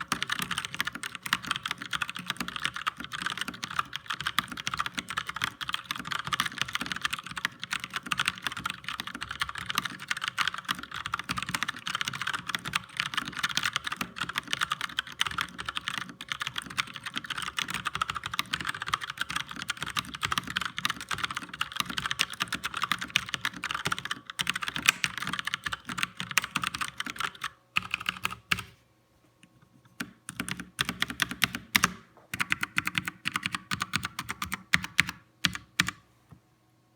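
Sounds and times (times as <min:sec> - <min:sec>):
mechanical keyboard typing: 0:00.0 - 0:28.7, 0:30.0 - 0:36.0.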